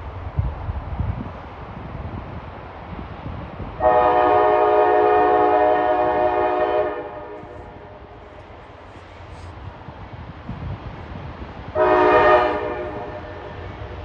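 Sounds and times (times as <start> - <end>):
locomotive air horn: 3.8 - 8.0, 11.8 - 13.6.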